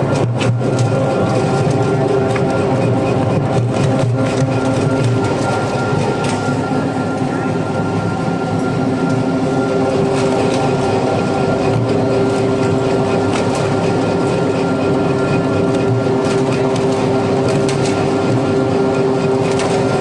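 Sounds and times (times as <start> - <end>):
grinding machine motor humming: 0.0 - 20.0
sharp clicks and knocks: 0.1 - 6.6.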